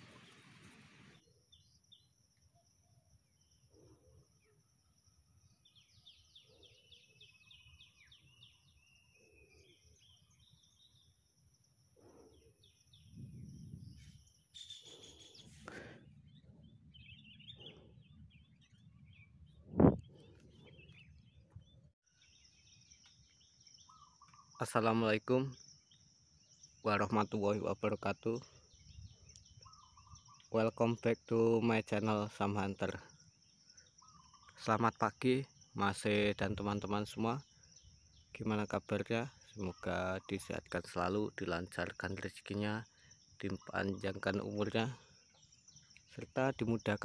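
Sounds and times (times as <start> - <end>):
birds chirping and calling: 12.0 - 23.1, 23.7 - 25.0, 28.7 - 30.8, 38.2 - 42.8.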